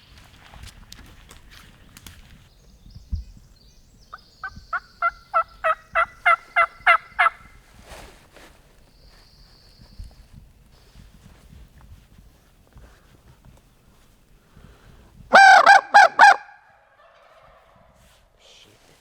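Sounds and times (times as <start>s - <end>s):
turkey yelps: 4.4s - 7.5s, 15.3s - 17.8s.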